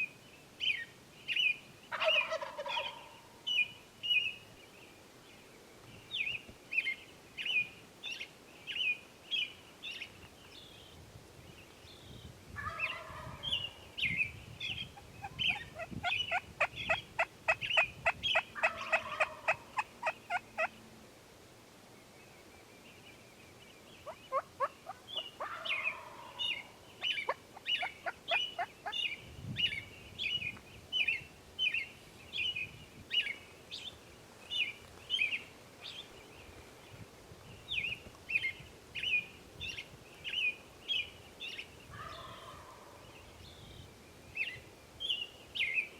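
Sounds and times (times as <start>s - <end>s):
turkey gobbling: 1.9s - 3.2s, 15.2s - 20.7s, 24.1s - 26.7s
small bird chirping: 12.8s - 20.7s.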